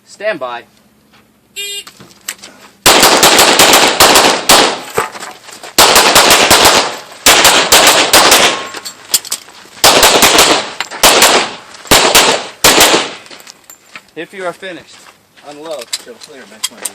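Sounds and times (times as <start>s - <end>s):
pistol shots: 2.8s - 5.0s, 5.8s - 8.8s, 9.8s - 13.2s.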